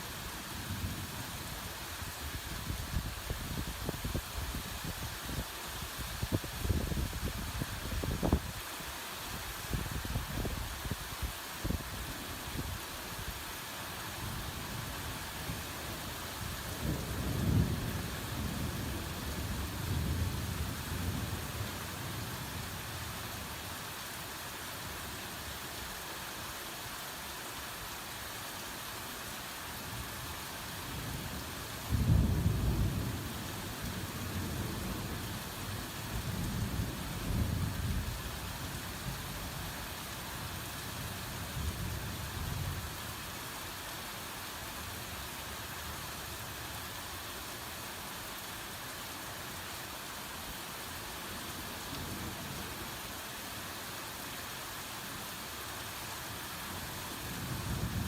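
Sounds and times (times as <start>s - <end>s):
hard rain hissing: 0.0s - 58.0s.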